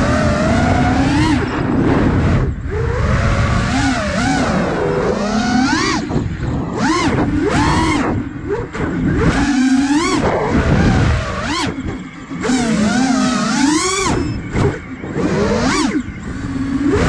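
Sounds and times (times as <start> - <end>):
wind rush: 0.0 - 12.0
drone motors whining: 0.0 - 17.0.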